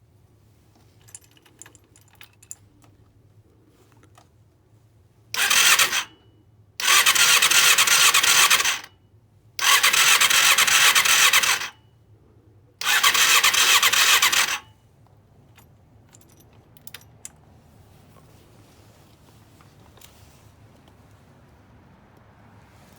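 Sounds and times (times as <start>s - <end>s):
starter cranking engine: 5.4s - 6.2s, 6.8s - 8.9s, 9.6s - 11.8s, 12.8s - 14.7s.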